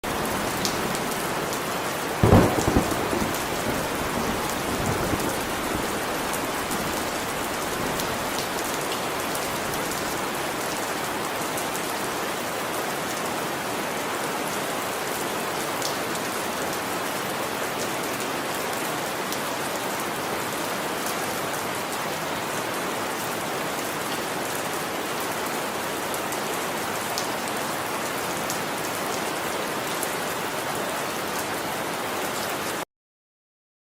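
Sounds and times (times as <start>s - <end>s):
steady rain falling: 0.0s - 32.8s
thunder clap rumbling: 2.2s - 8.8s.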